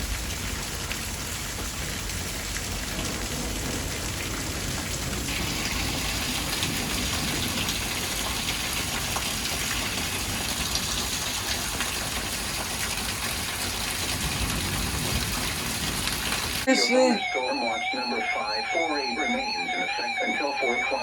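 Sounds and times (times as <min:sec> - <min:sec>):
steady rain falling: 0:00.0 - 0:16.7.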